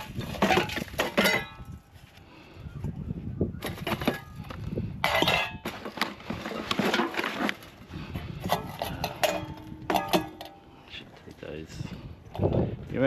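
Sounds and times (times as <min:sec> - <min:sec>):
crockery and utensils clattering: 0:08.5 - 0:10.6.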